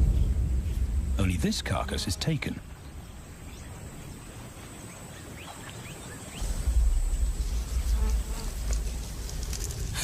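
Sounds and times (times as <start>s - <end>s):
deep low rumble: 0.0s - 3.6s.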